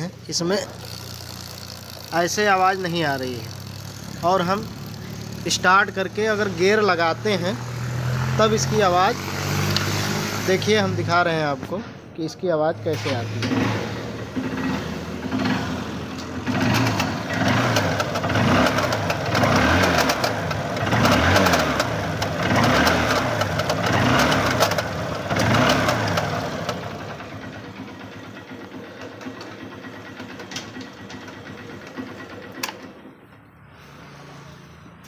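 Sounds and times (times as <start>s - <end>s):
chain drive rattling and ticking: 0.0s - 7.4s, 16.5s - 32.8s
motorcycle engine revving: 0.0s - 12.0s, 12.8s - 35.0s.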